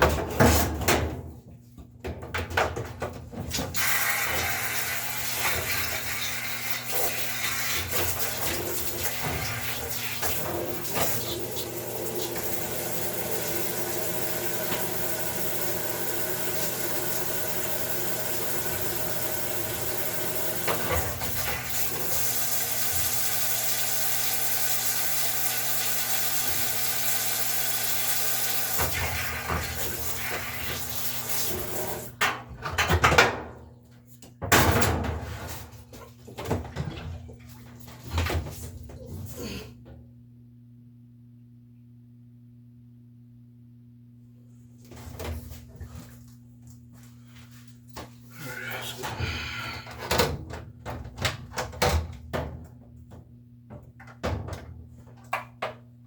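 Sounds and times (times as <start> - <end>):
water running: 3.8 - 32.2.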